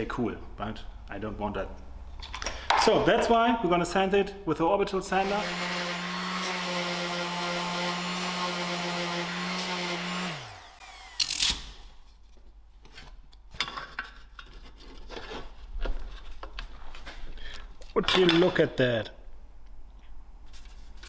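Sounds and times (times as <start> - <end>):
orbital sander running: 5.1 - 11.4.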